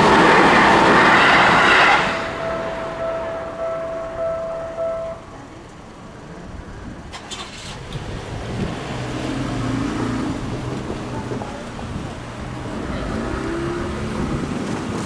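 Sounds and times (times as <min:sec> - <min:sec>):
level crossing alarm tone: 0:01.5 - 0:05.5.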